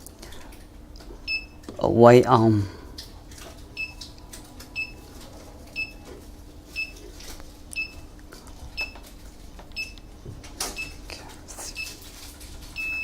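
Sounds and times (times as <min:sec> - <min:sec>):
alarm panel high beeps: 0:03.8 - 0:04.0, 0:04.8 - 0:05.0, 0:05.8 - 0:06.0, 0:09.8 - 0:10.0, 0:12.8 - 0:13.0.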